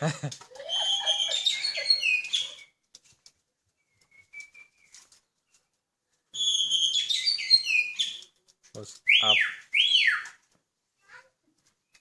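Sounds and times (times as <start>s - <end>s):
songbird whistling: 0.7s - 2.8s, 3.8s - 5.0s, 6.4s - 8.2s, 9.1s - 10.4s.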